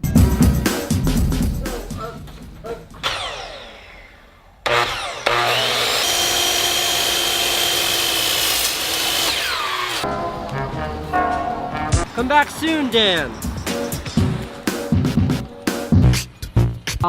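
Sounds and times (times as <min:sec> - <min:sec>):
power saw whining: 0:03.0 - 0:10.1.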